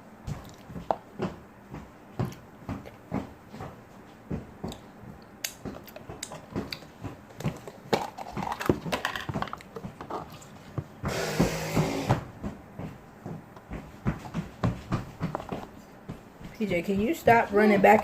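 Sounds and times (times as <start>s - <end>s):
close chewing with wet crunches: 0.4s - 0.8s, 9.6s - 10.6s.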